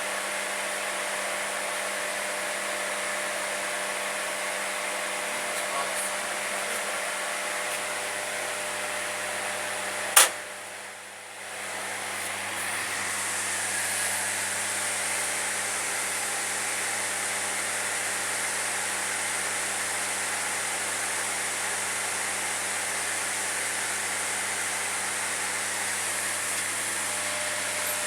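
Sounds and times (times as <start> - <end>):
sharp click: 10.2 - 10.4.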